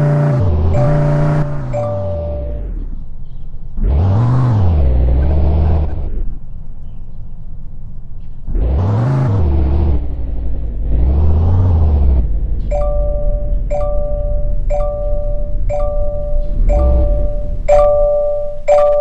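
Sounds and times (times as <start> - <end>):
electronic chime: 0.0 - 2.8, 12.7 - 19.0
engine sample revving: 0.0 - 18.7.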